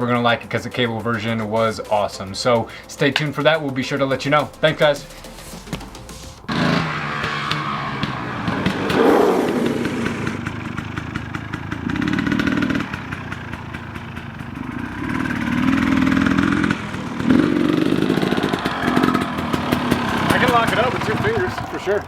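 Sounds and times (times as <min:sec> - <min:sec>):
dirt bike engine revving: 0:04.1 - 0:21.7.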